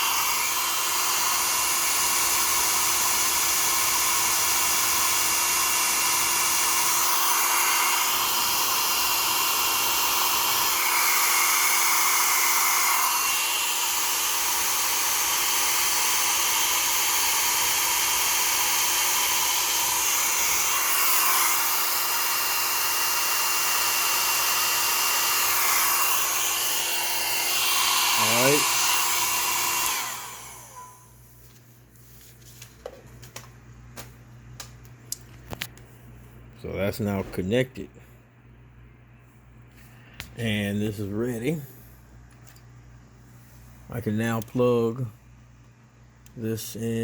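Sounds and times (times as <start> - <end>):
hot-air blower running: 0.0 - 34.7.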